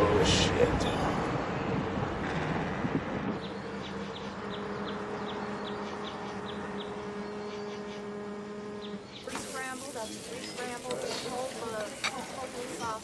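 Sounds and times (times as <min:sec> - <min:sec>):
vehicle noise: 0:00.0 - 0:13.0
steady low hum: 0:00.8 - 0:09.3
bird chirping: 0:03.3 - 0:13.0.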